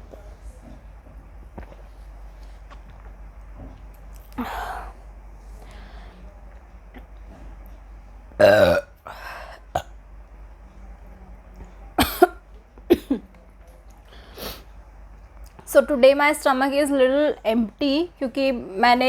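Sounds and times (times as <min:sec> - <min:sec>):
woman burping: 0:08.4 - 0:08.9.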